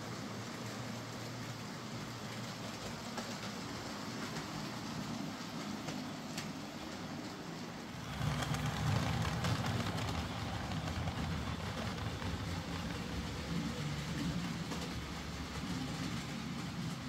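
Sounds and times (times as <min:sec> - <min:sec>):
model train motor humming: 0:07.9 - 0:16.9.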